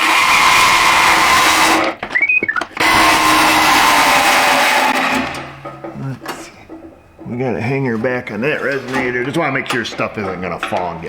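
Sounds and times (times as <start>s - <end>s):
power saw cutting steel pipe: 0.0s - 2.0s, 2.8s - 5.7s.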